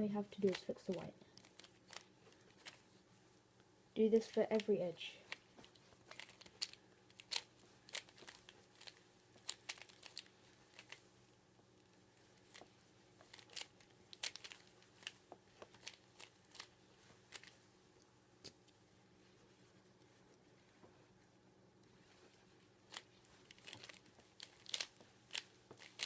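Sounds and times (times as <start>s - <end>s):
puzzle cube plastic clicks: 0.4s - 2.8s, 4.2s - 11.0s, 12.4s - 16.7s, 22.9s - 26.0s.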